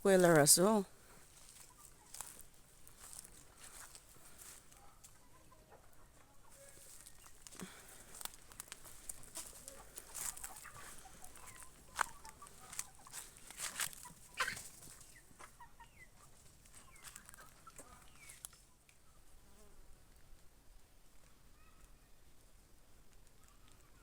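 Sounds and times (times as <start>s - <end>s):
chickens clucking softly: 1.5s - 7.8s, 8.9s - 18.8s, 23.2s - 24.0s.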